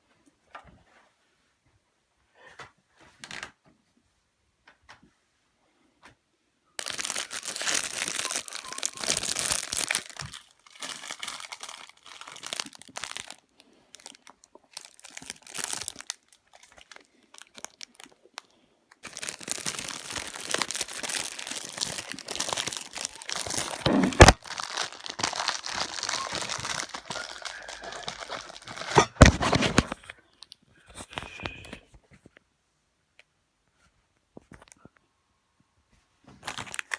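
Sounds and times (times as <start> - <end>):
crinkling and rustling: 2.4 - 3.9, 6.8 - 32.4, 35.9 - 36.9.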